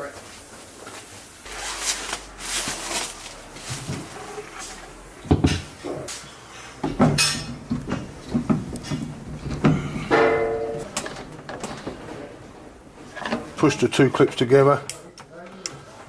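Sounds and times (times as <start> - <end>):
plastic parts knocking and clacking: 6.8 - 12.0.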